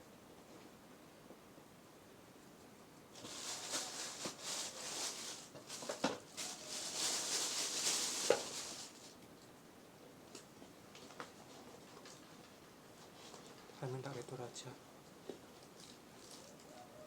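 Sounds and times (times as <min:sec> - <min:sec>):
packaging rustling: 0:03.2 - 0:09.2.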